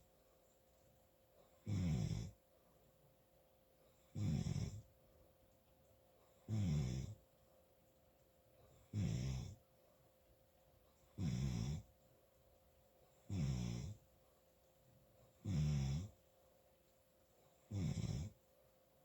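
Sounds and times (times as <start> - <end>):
quiet breathing: 0.0 - 19.0
loud snoring: 1.6 - 2.3, 4.2 - 4.8, 6.5 - 7.2, 8.9 - 9.6, 11.2 - 11.9, 13.3 - 14.0, 15.4 - 16.1, 17.7 - 18.4.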